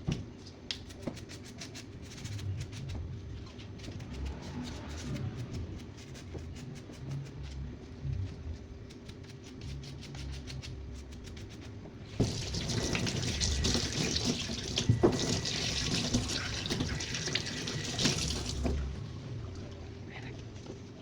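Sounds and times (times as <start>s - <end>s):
faint low hum: 0.0s - 21.0s
tap water splashing: 12.1s - 18.9s.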